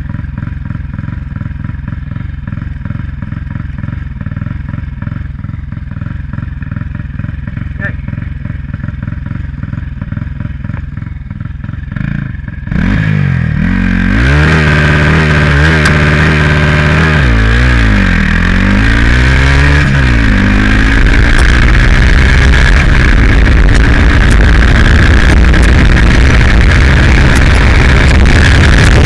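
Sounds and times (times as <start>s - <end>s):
motorcycle engine accelerating: 0.0s - 29.0s.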